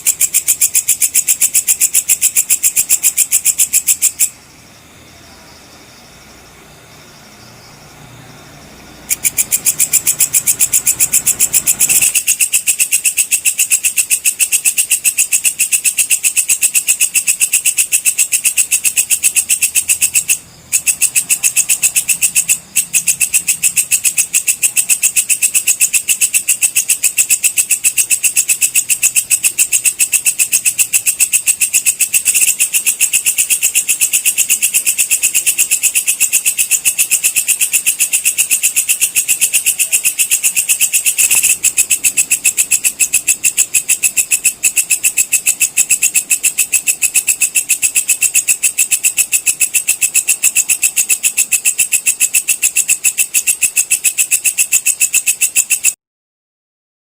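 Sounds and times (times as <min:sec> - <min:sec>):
katydid high-pitched trill: 0:00.0 - 0:04.5, 0:08.6 - 0:56.0.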